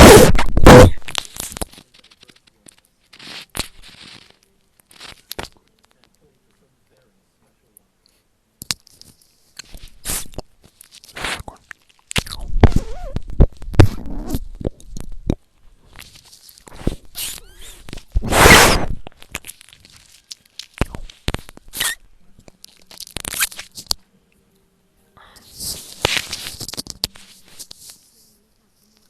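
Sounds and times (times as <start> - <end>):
loud crackling noise bursts: 0.0 - 2.5, 12.5 - 15.3, 16.7 - 21.9.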